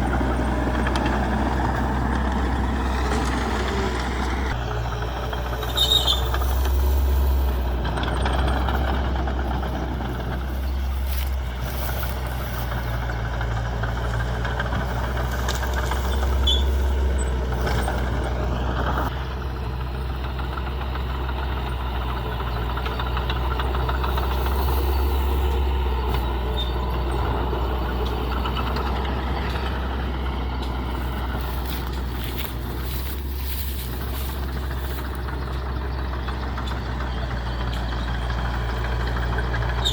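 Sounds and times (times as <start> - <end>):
diesel machinery engine under load: 0.0 - 39.9.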